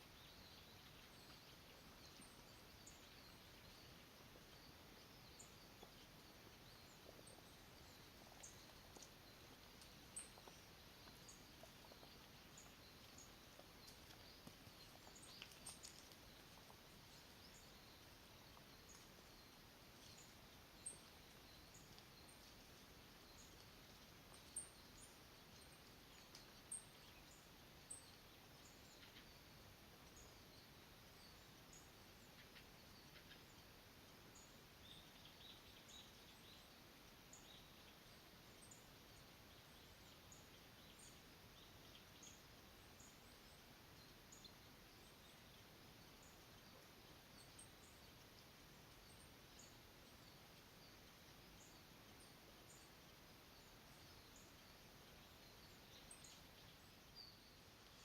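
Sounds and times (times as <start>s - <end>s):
faint steady hiss: 0.0s - 58.0s
soft ticks: 7.0s - 17.7s, 25.8s - 26.9s.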